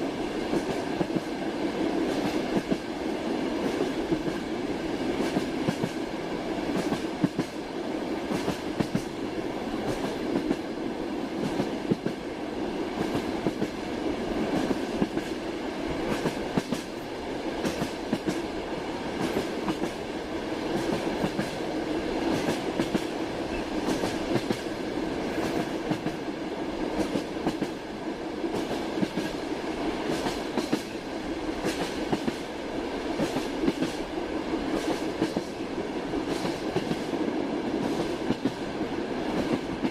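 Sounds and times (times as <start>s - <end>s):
train rumbling along track: 0.0s - 39.9s.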